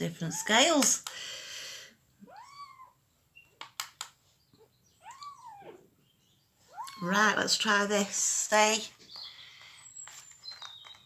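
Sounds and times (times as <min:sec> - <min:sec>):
sharp clicks: 0:03.5 - 0:04.2.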